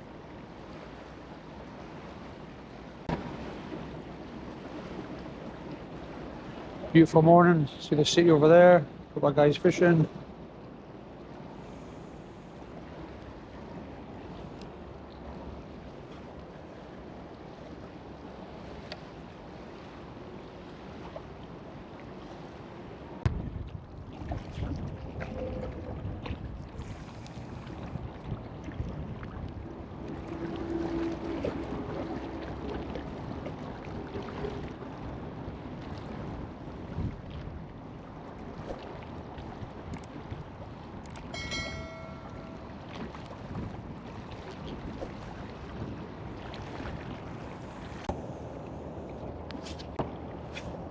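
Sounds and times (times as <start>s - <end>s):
river water: 0.0s - 50.9s
wind: 0.0s - 50.9s.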